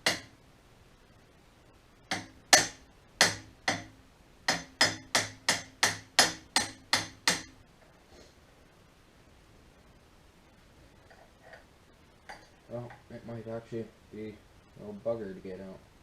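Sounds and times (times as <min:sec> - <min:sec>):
hammer striking metal punch: 0:00.0 - 0:00.4, 0:02.1 - 0:07.6.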